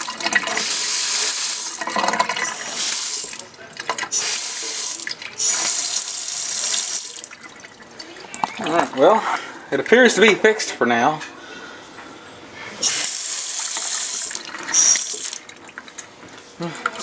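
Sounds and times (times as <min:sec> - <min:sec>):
faucet water running into sink: 0:00.0 - 0:09.2, 0:12.8 - 0:16.1.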